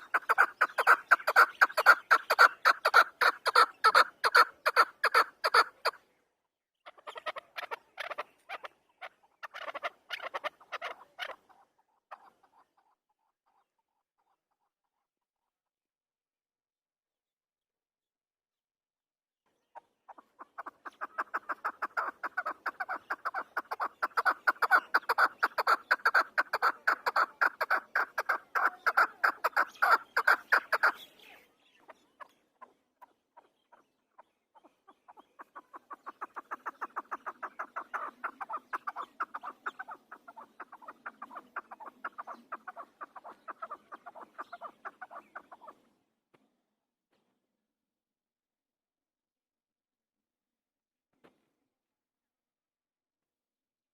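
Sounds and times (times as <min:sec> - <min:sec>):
partridge rapid clucking calls: 0:00.0 - 0:06.2, 0:06.8 - 0:15.5, 0:19.5 - 0:46.0.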